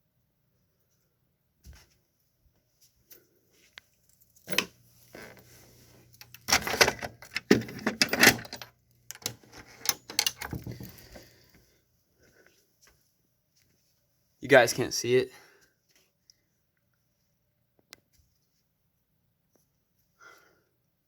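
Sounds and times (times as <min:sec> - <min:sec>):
rattling and clicking: 0:06.2 - 0:11.2.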